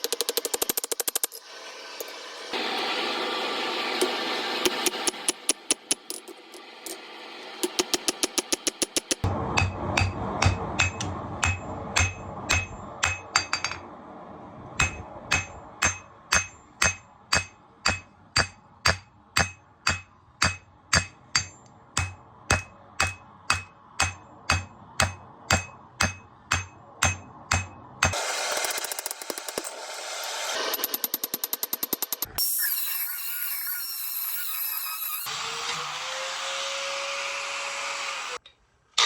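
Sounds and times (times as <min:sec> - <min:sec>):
hammer striking steel on anvil: 0:04.0 - 0:07.0, 0:07.6 - 0:13.9, 0:14.8 - 0:32.4
loud steady rushing noise: 0:06.6 - 0:18.0.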